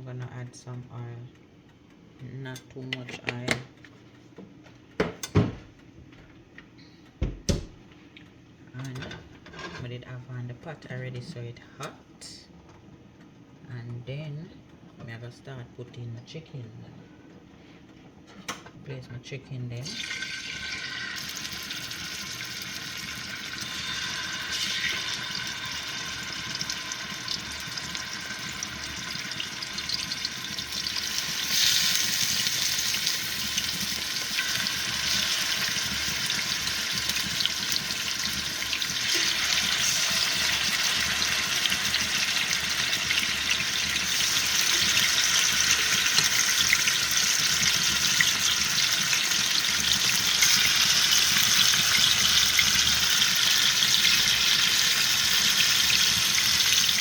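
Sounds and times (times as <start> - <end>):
chicken frying in hot oil: 19.8 - 57.0.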